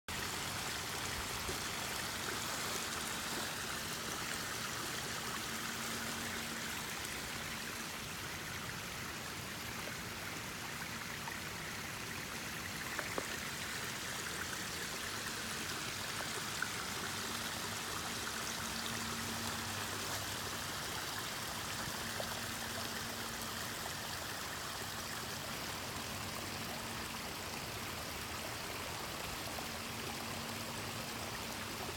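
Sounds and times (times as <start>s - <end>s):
rainwater flowing: 0.1s - 8.7s.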